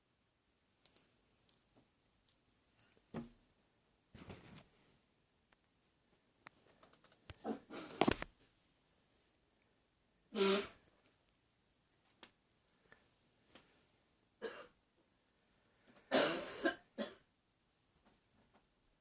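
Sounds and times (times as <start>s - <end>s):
woman coughing: 14.4s - 14.8s, 16.1s - 17.2s.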